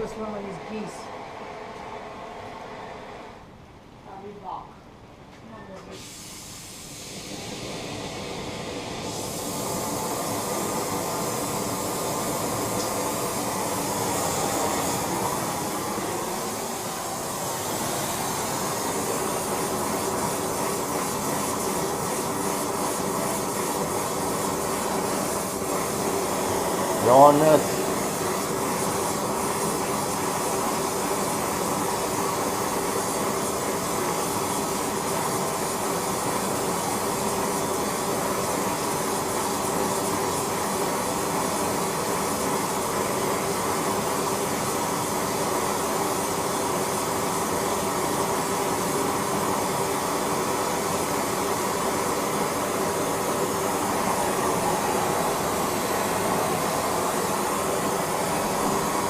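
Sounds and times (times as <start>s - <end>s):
machine hum: 0.0s - 4.0s, 6.9s - 30.9s, 52.2s - 59.0s
machine hiss: 5.9s - 59.0s.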